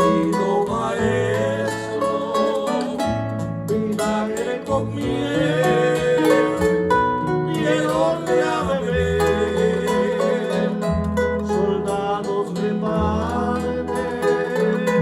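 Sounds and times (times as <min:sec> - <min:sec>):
hymn on plucked strings: 0:00.0 - 0:15.0
steady bass line: 0:00.0 - 0:15.0.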